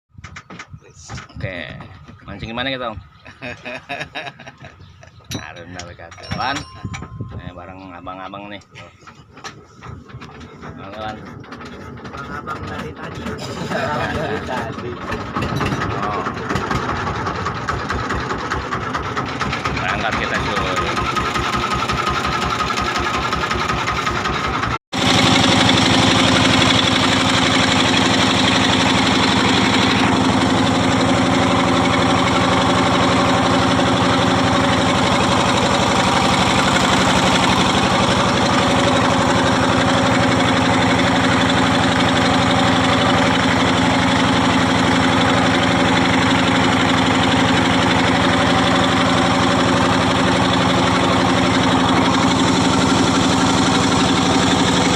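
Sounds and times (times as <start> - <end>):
boat engine knocking steadily: 0.1 - 54.9.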